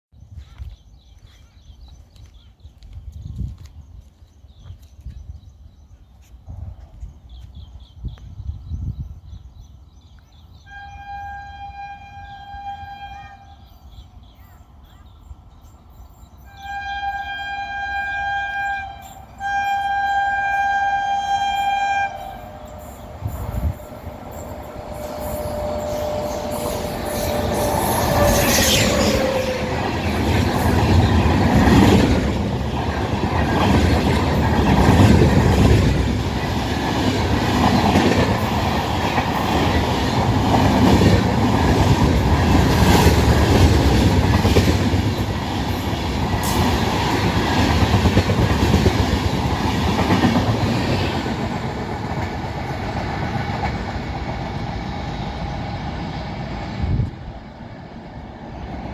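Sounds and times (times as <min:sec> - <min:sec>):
train rumbling past: 0:04.4 - 0:58.9
train horn blasts: 0:10.6 - 0:13.8, 0:16.5 - 0:23.8.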